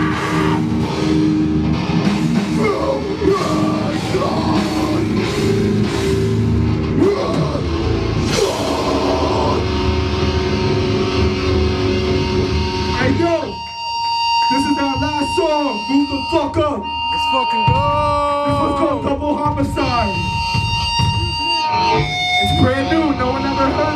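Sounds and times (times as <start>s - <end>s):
heavy metal band playing: 0.0s - 23.9s
ringing guitar tone: 0.0s - 23.9s.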